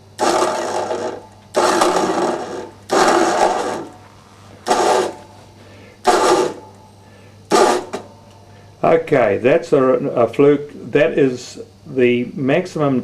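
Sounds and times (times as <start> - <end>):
wire testing rig mechanical bursts: 0.0 - 8.3.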